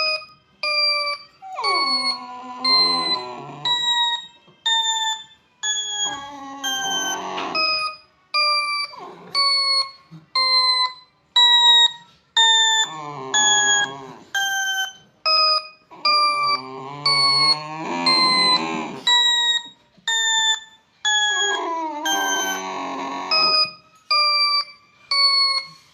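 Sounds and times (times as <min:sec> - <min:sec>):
ding tone sliding down: 0:00.0 - 0:11.0, 0:11.8 - 0:25.9
pet wavering vocal calls: 0:01.0 - 0:08.0, 0:12.4 - 0:14.9, 0:16.0 - 0:19.6, 0:20.2 - 0:23.8.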